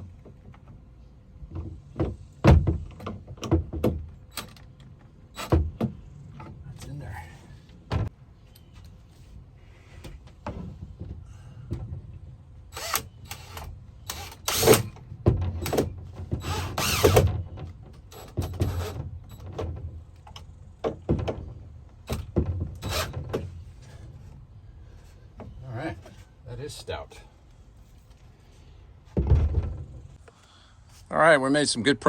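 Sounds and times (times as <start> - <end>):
tools and lumber knocking: 0.0 - 6.6, 10.0 - 12.2, 12.8 - 24.2.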